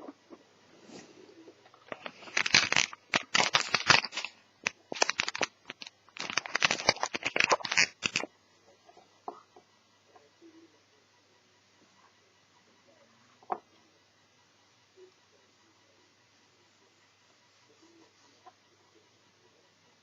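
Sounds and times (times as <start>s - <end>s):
hands handling small parts clicking: 1.8s - 8.3s.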